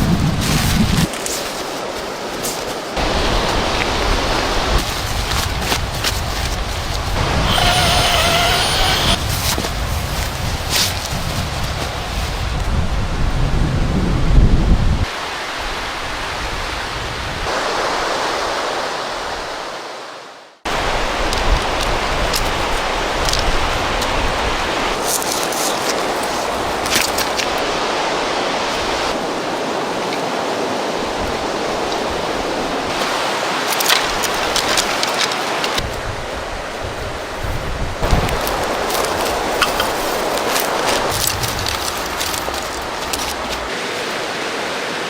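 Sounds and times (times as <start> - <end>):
low wind rumble on microphone: 0.0 - 1.2, 3.0 - 17.5, 35.8 - 43.8.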